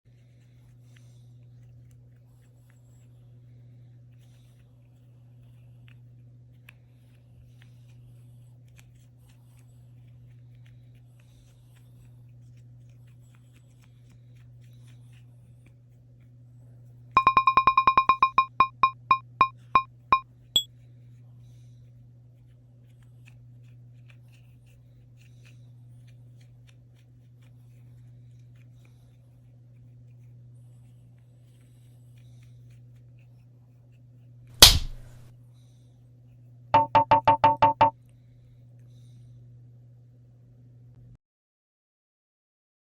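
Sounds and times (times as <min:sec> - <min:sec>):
electronic beeps: 0:17.2 - 0:20.7, 0:36.8 - 0:37.9.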